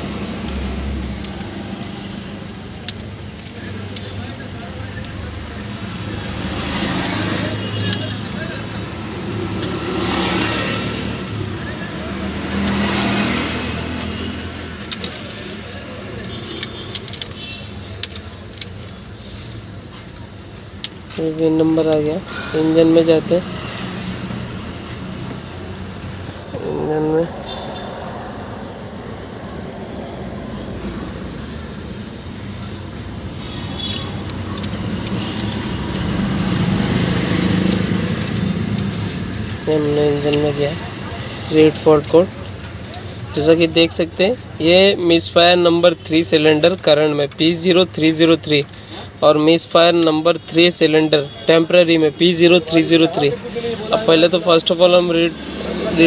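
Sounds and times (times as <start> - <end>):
sharp clicks: 12.1 - 22.2, 33.4 - 41.0.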